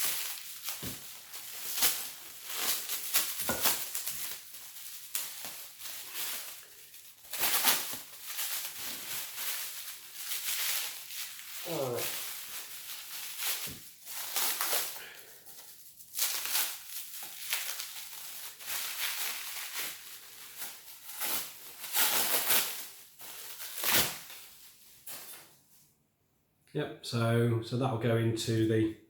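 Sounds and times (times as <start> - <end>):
packaging crinkling: 0.0 - 25.5.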